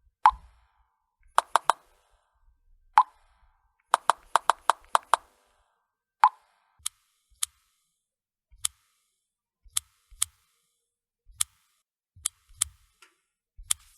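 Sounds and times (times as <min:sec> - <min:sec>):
phone key taps: 0:01.4 - 0:01.8, 0:04.0 - 0:05.2.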